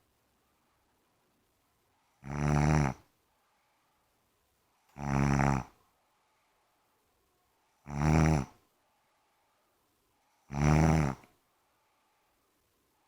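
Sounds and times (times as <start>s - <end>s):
quiet breathing: 0.0s - 13.0s
woman snoring: 2.2s - 3.1s, 4.9s - 5.8s, 7.8s - 8.6s, 10.5s - 11.3s.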